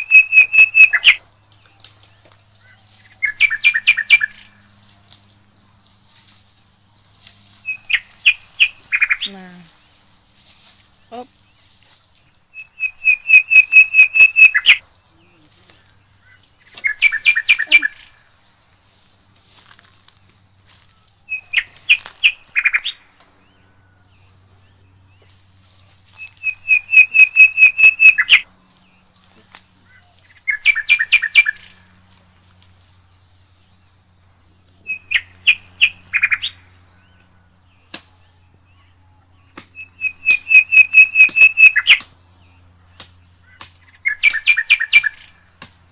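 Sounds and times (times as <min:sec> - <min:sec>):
bird calling sharp notes: 0:00.0 - 0:01.2, 0:07.6 - 0:09.7, 0:12.6 - 0:15.4, 0:16.2 - 0:18.2, 0:26.2 - 0:28.5, 0:39.8 - 0:42.1.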